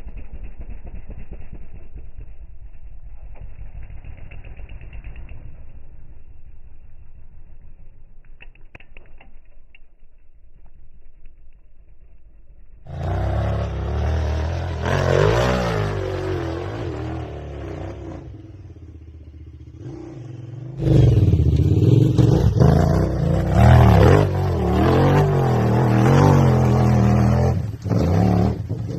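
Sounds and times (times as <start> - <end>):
motorcycle engine revving: 0.0 - 6.9, 12.8 - 28.9.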